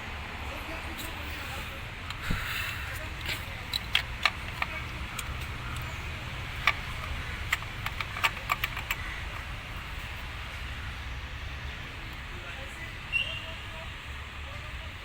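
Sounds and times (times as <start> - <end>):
tools clicking and knocking: 3.0 - 10.3.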